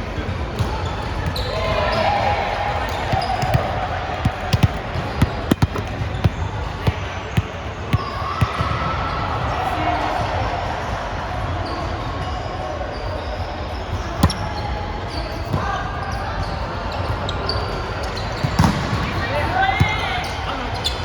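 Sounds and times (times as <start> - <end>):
volleyball thumps: 2.9 - 8.8, 14.1 - 14.6.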